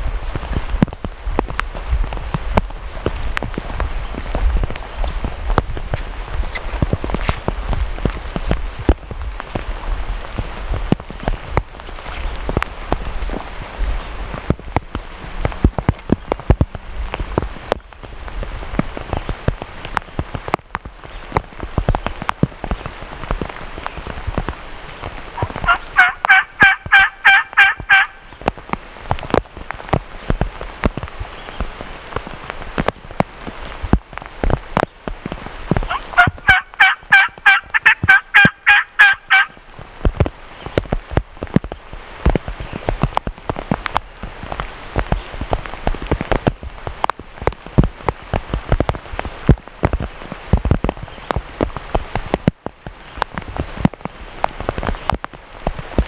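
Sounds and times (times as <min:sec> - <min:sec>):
raindrops tapping close by: 0:00.0 - 0:56.0
steady rain: 0:00.0 - 0:56.0
turkey calls: 0:25.4 - 0:28.2, 0:35.8 - 0:39.6.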